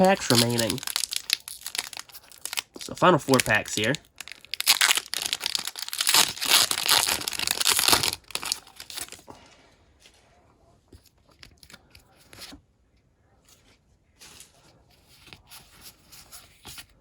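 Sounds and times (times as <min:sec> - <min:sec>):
foil wrapper crinkling: 0:00.0 - 0:09.2.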